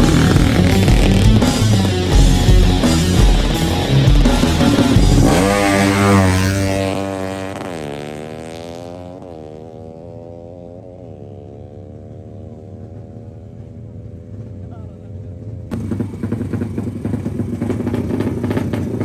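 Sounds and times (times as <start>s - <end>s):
rock music: 0.0s - 6.9s
motorcycle engine revving: 0.0s - 19.0s.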